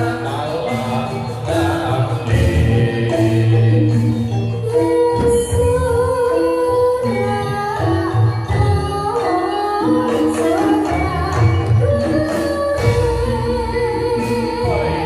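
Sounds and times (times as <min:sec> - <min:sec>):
sustained pitched percussion: 0:00.0 - 0:15.0.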